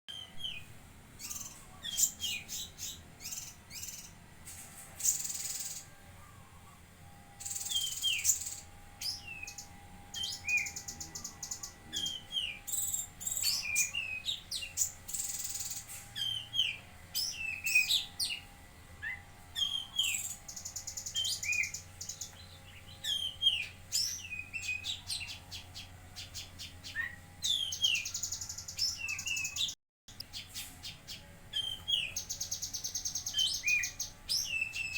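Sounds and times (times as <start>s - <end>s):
songbird chirping and whistling: 0.1s - 4.1s, 7.4s - 18.4s, 19.0s - 34.9s
buzzy rattling bird trills: 0.4s - 34.9s.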